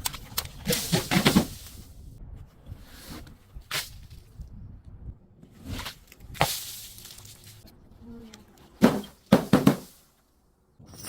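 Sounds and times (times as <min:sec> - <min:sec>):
objects crunching and cracking: 0:05.6 - 0:07.7.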